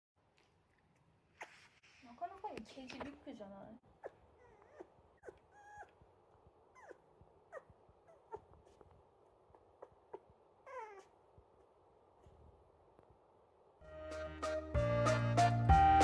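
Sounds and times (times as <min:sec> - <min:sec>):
puppy whimpering: 0:04.0 - 0:11.7.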